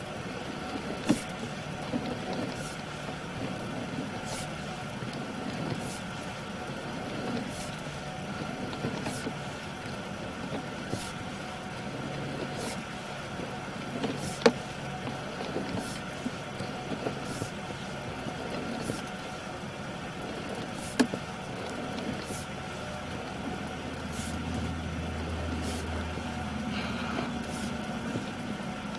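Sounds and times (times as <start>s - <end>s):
low mechanical hum: 0.0s - 28.9s
cable swishing: 25.5s - 28.6s.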